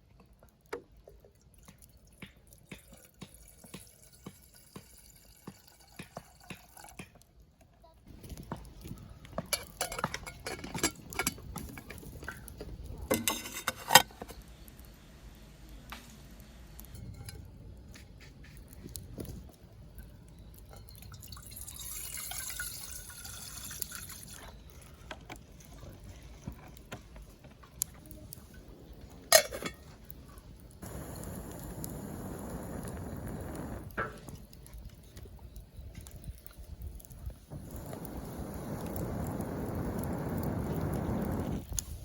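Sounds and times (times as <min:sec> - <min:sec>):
water splashing in metal pot: 0:01.6 - 0:07.1, 0:20.7 - 0:24.5
cookware clicking and knocking: 0:09.5 - 0:11.9.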